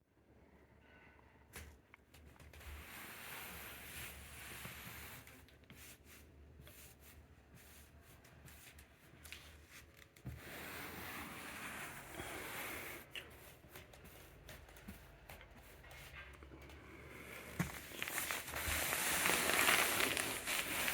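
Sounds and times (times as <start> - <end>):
cushion rustling and crackling: 17.3 - 20.9.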